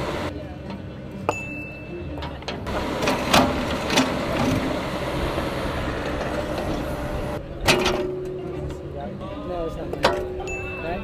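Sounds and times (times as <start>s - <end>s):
excavator engine running: 0.0s - 1.1s, 2.3s - 8.5s.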